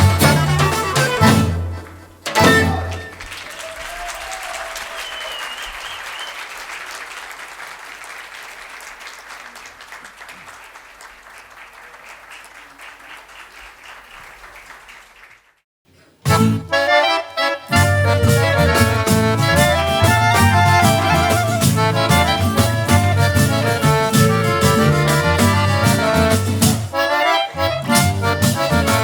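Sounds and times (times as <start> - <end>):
folk band music: 0.0 - 3.5, 16.3 - 29.0
audience applauding: 0.0 - 15.6.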